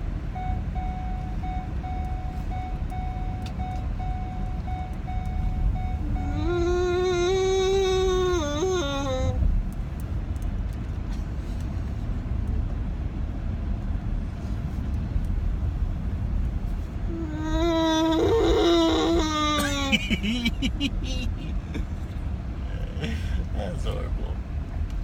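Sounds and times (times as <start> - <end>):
man's high-pitched vocal squeal: 6.0 - 9.4, 17.1 - 21.5.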